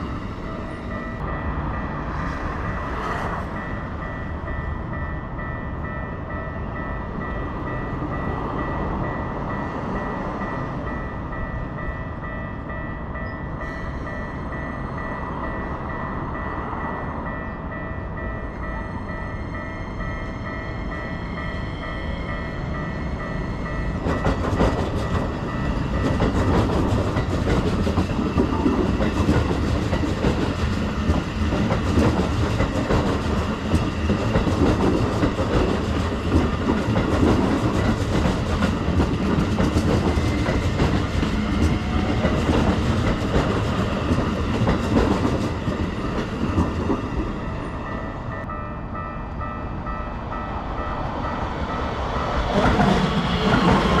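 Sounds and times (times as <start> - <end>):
crossing warning bell ringing: 0.0 - 54.0
train rumbling: 0.0 - 54.0
train wheels clattering: 24.0 - 47.4, 52.2 - 54.0.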